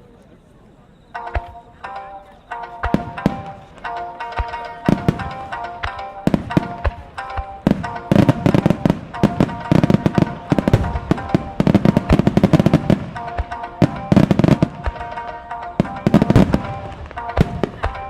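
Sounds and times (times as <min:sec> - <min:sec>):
music: 0:01.1 - 0:18.0
fireworks bangs and crackle: 0:04.9 - 0:18.0.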